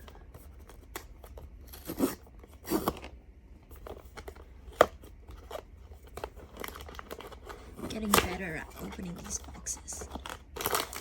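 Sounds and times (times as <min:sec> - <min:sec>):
cardboard tearing: 0:10.2 - 0:11.0.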